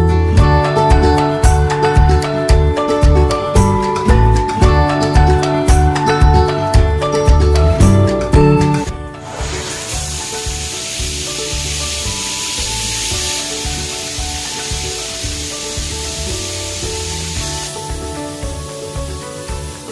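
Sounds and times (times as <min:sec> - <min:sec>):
background music: 0:00.0 - 0:19.9
water spraying from shower head: 0:09.2 - 0:19.9.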